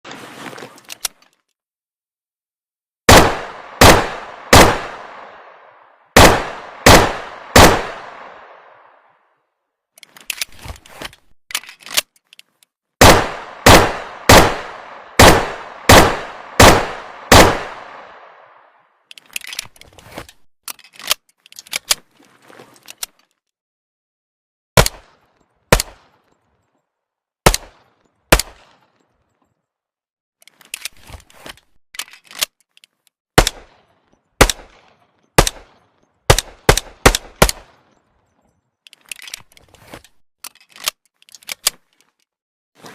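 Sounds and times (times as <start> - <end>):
pistol shots: 3.1 - 8.9, 13.0 - 18.4
metallic clicks of pistol action: 11.5 - 12.7, 20.7 - 22.0, 32.0 - 33.6, 38.9 - 39.6, 40.4 - 42.3.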